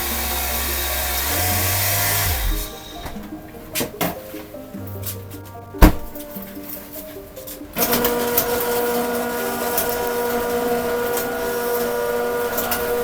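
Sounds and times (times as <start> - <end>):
motor hum and whine: 0.0 - 3.2.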